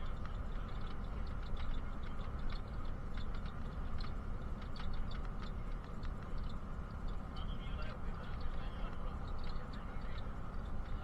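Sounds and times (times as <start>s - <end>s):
bus engine and road rumble: 0.0s - 11.0s.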